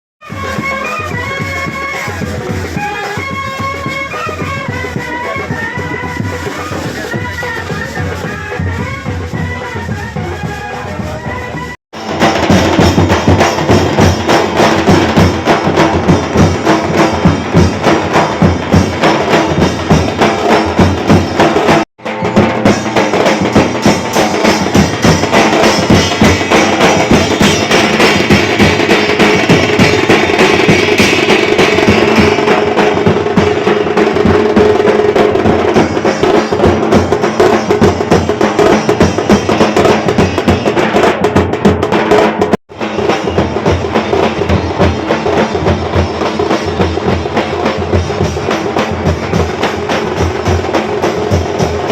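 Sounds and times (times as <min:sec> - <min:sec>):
brass band playing: 0:00.2 - 0:41.2
drums beating fast rhythm: 0:00.2 - 0:51.9.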